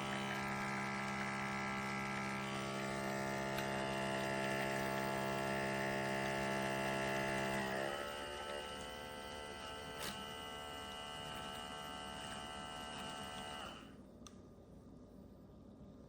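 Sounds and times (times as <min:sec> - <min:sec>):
small pump humming: 0:00.0 - 0:14.0
click: 0:14.2 - 0:14.4.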